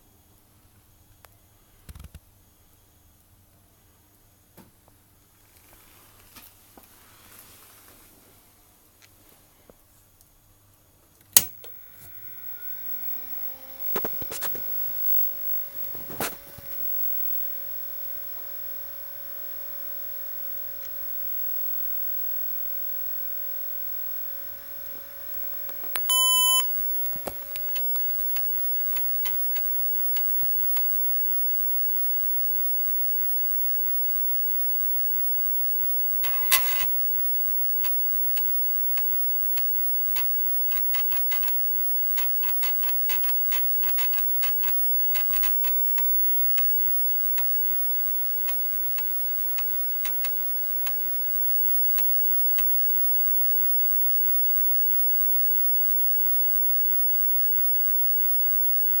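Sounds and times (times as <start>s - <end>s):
disk drive clicks: 11.3s - 59.0s
steady hum: 11.4s - 59.0s
computer beep: 25.4s - 55.4s.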